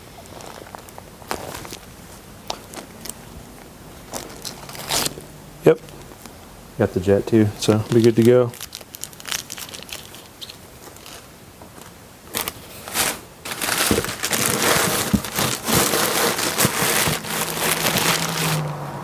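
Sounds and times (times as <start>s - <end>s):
packaging crinkling and rustling: 0.0s - 5.2s, 7.6s - 18.8s.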